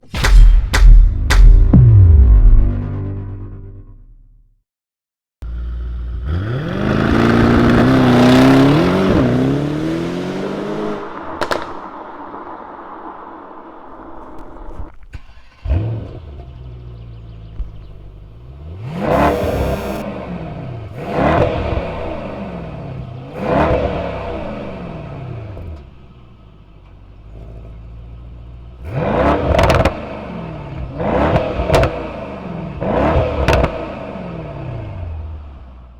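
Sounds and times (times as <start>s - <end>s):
car engine accelerating hard: 5.4s - 11.8s, 14.2s - 35.9s
exhaust cracks: 7.2s - 27.4s
sharp exhaust cracks: 10.3s - 20.1s
car engine idling: 10.7s - 21.0s, 24.4s - 28.8s.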